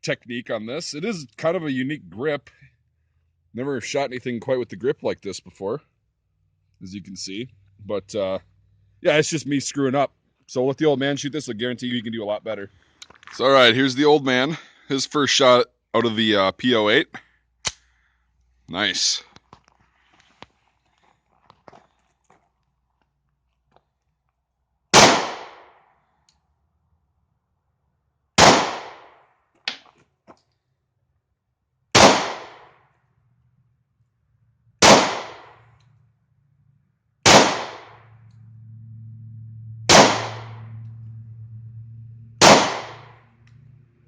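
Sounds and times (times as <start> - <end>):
pistol shots with echo: 24.9 - 25.8, 28.4 - 29.2, 32.0 - 32.7, 34.8 - 35.6, 37.3 - 38.0, 39.9 - 40.6, 42.4 - 43.1.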